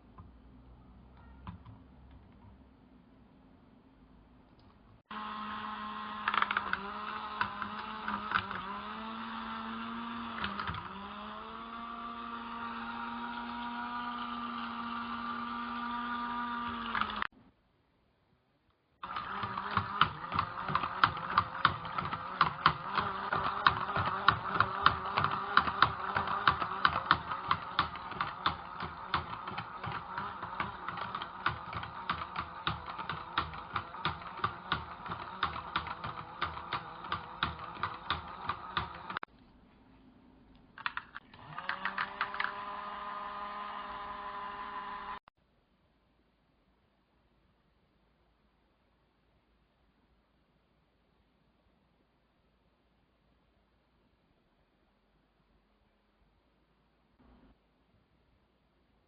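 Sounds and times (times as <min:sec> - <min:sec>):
small electric motor humming: 0:05.1 - 0:17.3, 0:19.0 - 0:39.3, 0:41.4 - 0:45.3.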